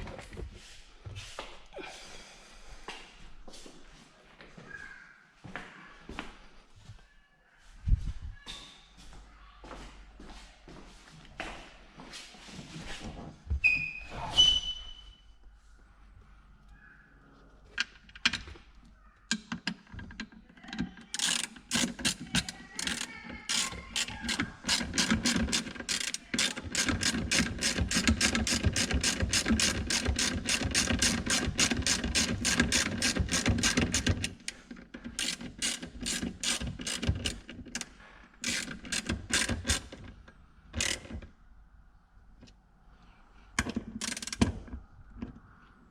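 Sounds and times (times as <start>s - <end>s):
ratchet wrench clicking: 21.1s - 34.4s, 35.1s - 39.9s, 40.8s - 41.1s, 44.0s - 44.4s.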